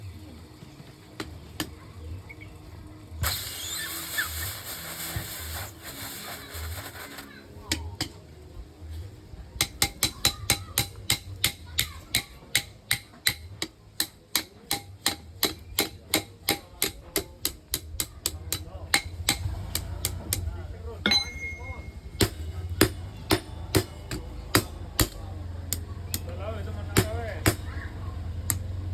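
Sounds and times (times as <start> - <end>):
steady hiss: 3.2 - 7.5
hammer striking iron on anvil: 9.6 - 20.5, 21.1 - 26.3, 26.9 - 27.7.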